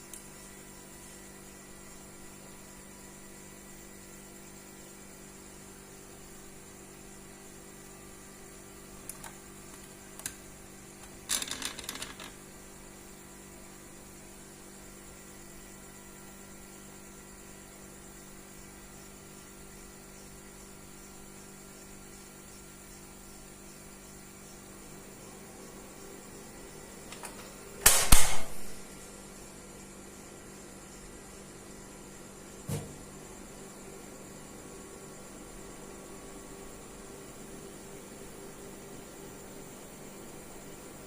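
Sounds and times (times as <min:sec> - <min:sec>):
steady low hum: 0:00.0 - 0:41.0.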